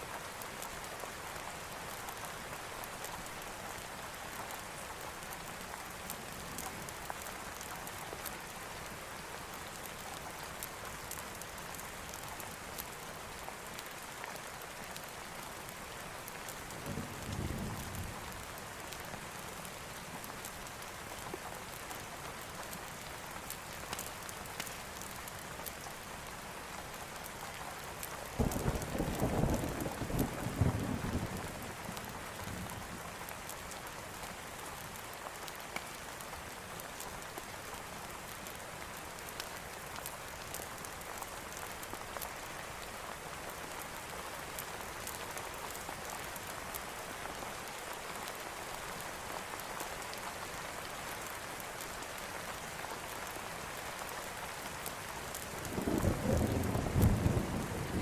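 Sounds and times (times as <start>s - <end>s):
steady rain falling: 0.0s - 58.0s
thunder rumbling: 55.7s - 58.0s.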